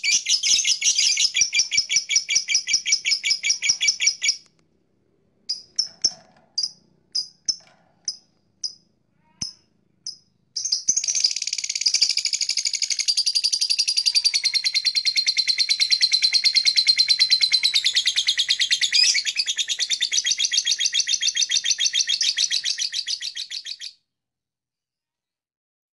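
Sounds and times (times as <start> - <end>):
lovebird chirping and trilling: 0.0 - 4.4, 5.5 - 24.0.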